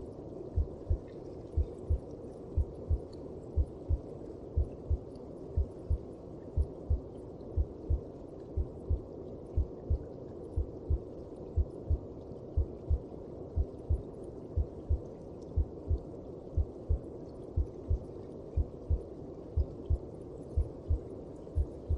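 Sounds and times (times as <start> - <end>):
muffled heartbeat thumps: 2.6 - 3.0, 4.6 - 5.0, 7.6 - 8.0, 12.6 - 13.0, 20.6 - 21.0, 21.6 - 21.9
steady low hum: 16.6 - 21.9.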